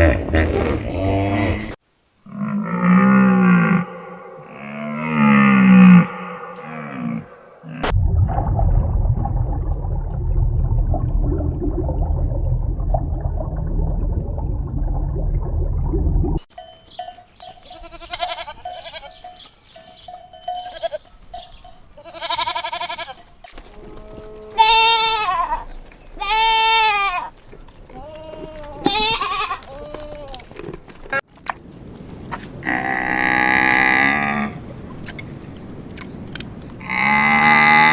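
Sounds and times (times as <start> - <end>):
low rumbling noise: 2.8 - 16.5
goats bleating: 17.6 - 19.3, 20.6 - 21.1, 22.0 - 23.2, 23.8 - 30.5.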